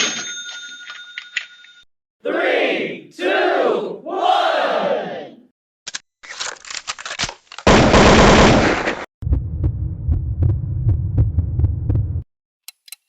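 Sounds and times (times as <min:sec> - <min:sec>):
low throbbing hum: 0:09.2 - 0:12.2.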